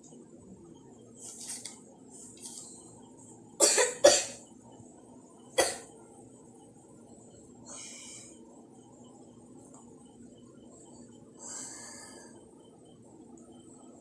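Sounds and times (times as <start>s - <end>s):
person coughing: 3.6s - 4.4s, 5.6s - 5.9s.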